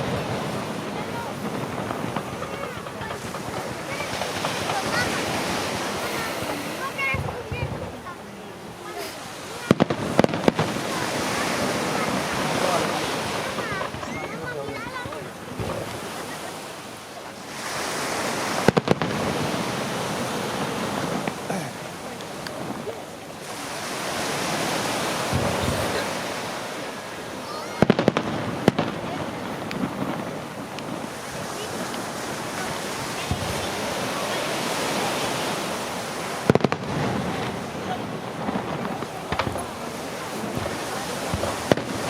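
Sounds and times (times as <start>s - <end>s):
fireworks shells bursting: 0.0s - 8.1s, 8.8s - 42.0s
sharp firework bangs: 0.0s - 8.2s, 8.8s - 16.8s, 17.5s - 42.0s.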